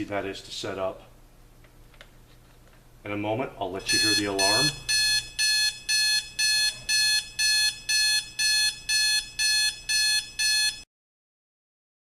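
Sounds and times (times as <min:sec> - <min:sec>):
alarm clock beeping: 0:03.8 - 0:10.9.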